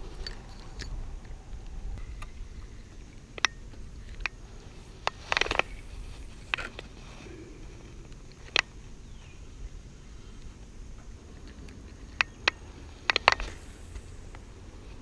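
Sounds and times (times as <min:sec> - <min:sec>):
low outdoor background: 0:00.0 - 0:15.0
fishing tackle clicks: 0:05.0 - 0:06.9, 0:11.4 - 0:14.5.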